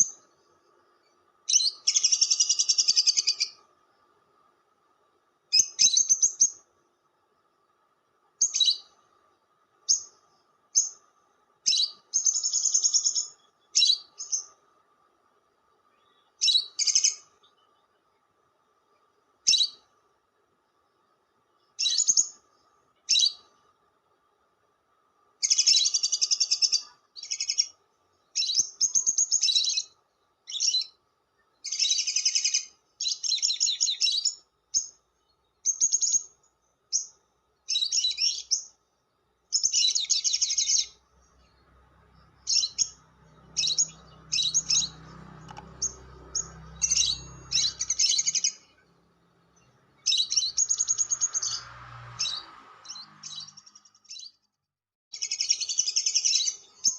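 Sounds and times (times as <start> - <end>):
lovebird chattering: 1.5 - 3.6, 5.5 - 6.6, 8.4 - 9.0, 11.6 - 14.6, 16.4 - 17.3, 21.8 - 22.4, 25.4 - 27.8, 28.4 - 31.0, 31.6 - 35.0, 35.6 - 38.7, 39.5 - 41.6, 42.4 - 48.8, 50.0 - 51.6, 55.1 - 56.9.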